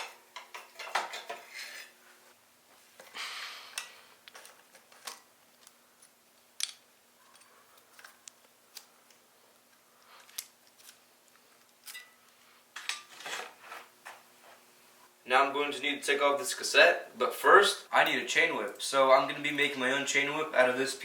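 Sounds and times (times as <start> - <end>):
metal bike parts and tools clinking: 0.0 - 2.0, 11.8 - 13.7.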